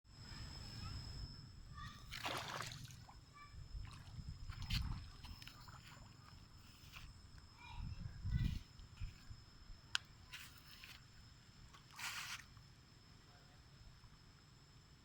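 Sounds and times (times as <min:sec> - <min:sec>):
water splashing and sloshing: 0:02.0 - 0:06.9.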